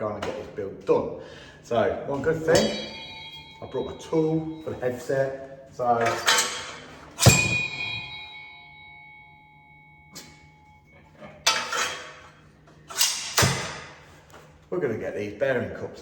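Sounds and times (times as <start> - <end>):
steel tool clanging and ringing: 2.2 - 14.0
metallic handling clatters: 6.0 - 8.0.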